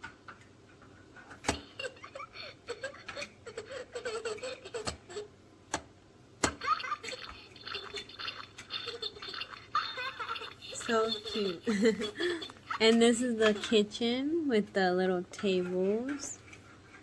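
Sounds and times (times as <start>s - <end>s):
giggling sound effects: 6.6s - 13.7s.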